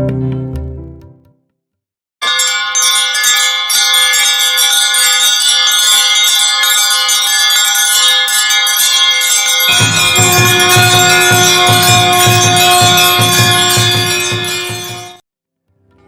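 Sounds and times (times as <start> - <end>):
temple bells ringing: 2.2 - 15.2.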